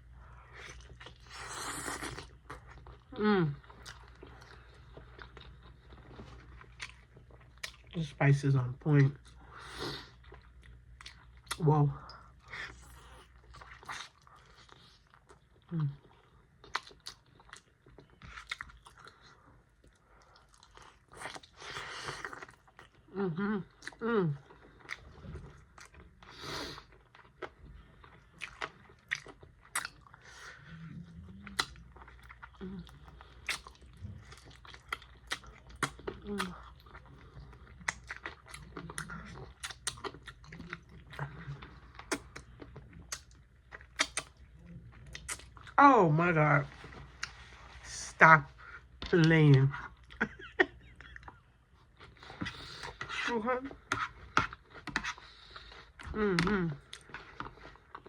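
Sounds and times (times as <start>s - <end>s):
chewing and biting: 24.6s - 30.7s, 31.3s - 45.8s
person humming mm: 56.1s - 56.8s.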